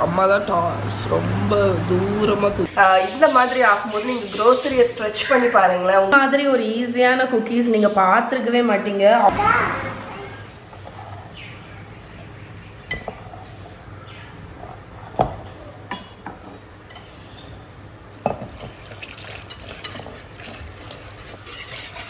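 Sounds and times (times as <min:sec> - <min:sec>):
dishes and utensils clinking: 0:09.3 - 0:22.0.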